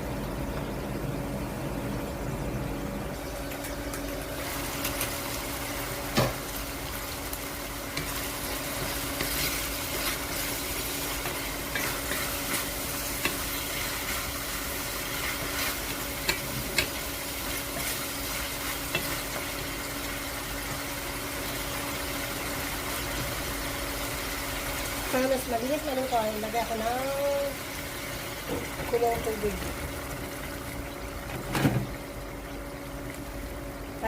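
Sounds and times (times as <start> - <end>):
steady low hum: 0.0 - 34.0
food sizzling in a pan: 3.1 - 34.0
utensil clicking against pan: 16.2 - 17.0.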